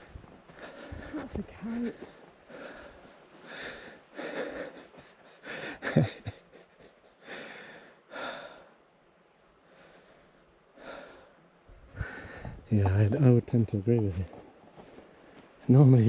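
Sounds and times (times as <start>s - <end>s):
person breathing heavily: 0.0s - 6.0s, 7.1s - 8.9s, 9.6s - 12.7s.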